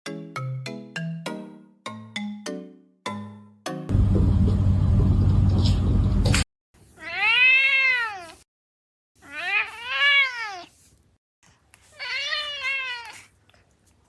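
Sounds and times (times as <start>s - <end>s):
cat meowing: 7.0s - 8.4s, 9.2s - 10.7s, 11.9s - 13.3s.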